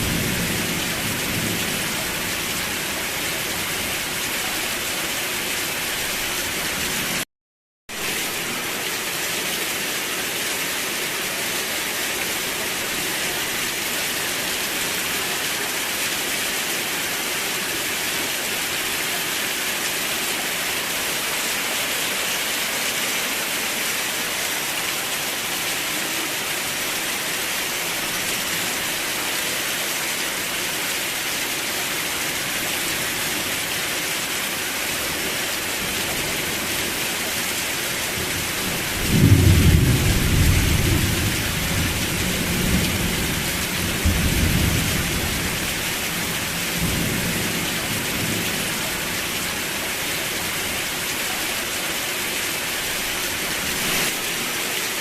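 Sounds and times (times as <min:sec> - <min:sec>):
steady rain: 0:00.0 - 0:07.3, 0:07.9 - 0:55.0
thunder rumbling: 0:39.0 - 0:45.7.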